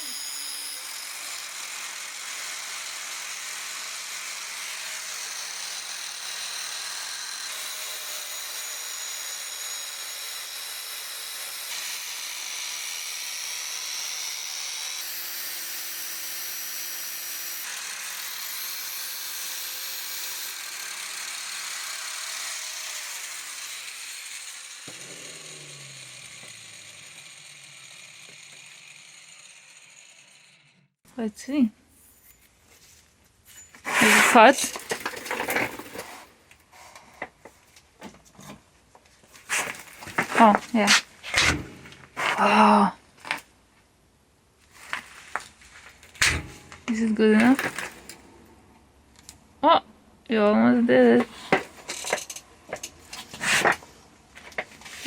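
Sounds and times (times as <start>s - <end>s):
power grinder sharpening axe blade: 0.0s - 31.0s, 33.8s - 36.3s, 39.4s - 42.6s, 46.2s - 48.2s, 51.2s - 53.8s.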